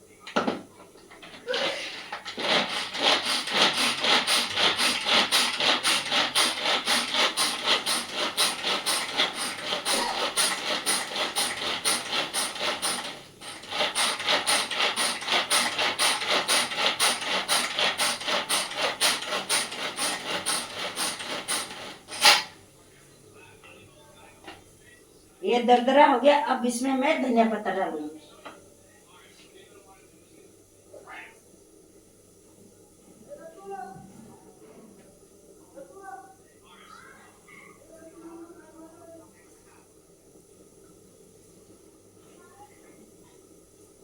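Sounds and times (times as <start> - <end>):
grinding stone rubbed back and forth: 1.6 - 22.5.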